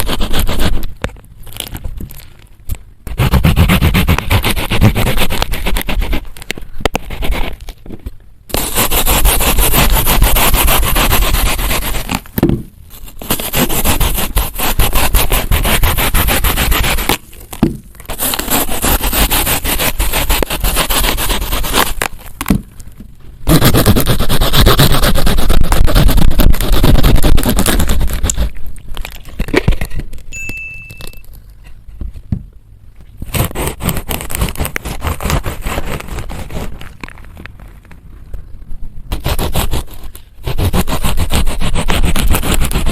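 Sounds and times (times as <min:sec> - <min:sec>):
plastic knife sawing through fruit: 0:00.0 - 0:00.9, 0:03.1 - 0:06.3, 0:08.5 - 0:12.3, 0:13.0 - 0:17.2, 0:18.1 - 0:22.1, 0:23.5 - 0:28.6, 0:33.3 - 0:36.8, 0:39.1 - 0:42.9.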